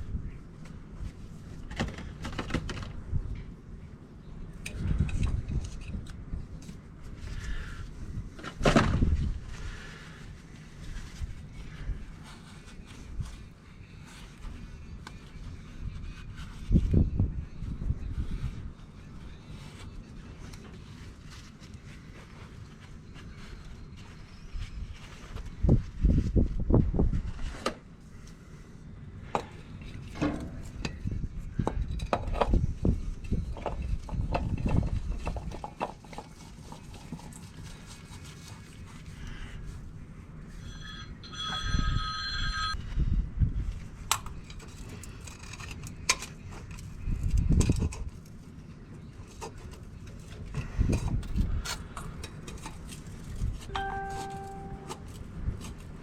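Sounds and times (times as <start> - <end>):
metal knocks and clanks: 30.1 - 31.0
brief ringing tone: 40.6 - 42.8, 53.7 - 55.1.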